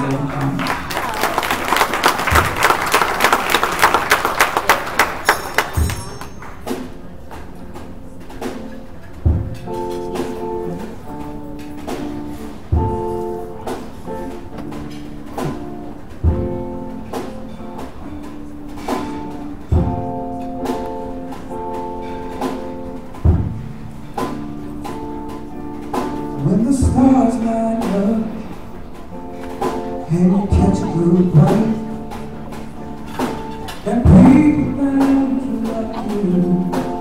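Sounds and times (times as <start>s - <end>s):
audience applause: 0.0s - 6.6s
band playing slow instrumental: 0.0s - 37.0s.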